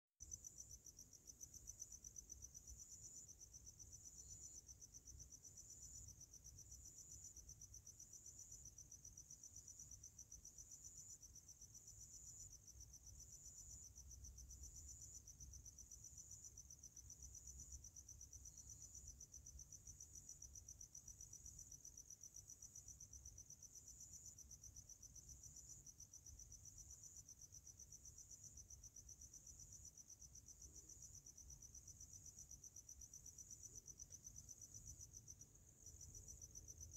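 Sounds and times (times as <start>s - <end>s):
crickets chirping: 0.2s - 36.9s.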